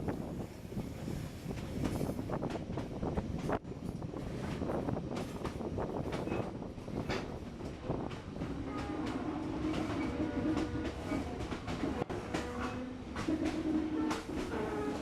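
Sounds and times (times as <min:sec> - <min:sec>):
train rumbling on rails: 0:00.0 - 0:15.0
wheels clicking over rail joints: 0:04.2 - 0:15.0.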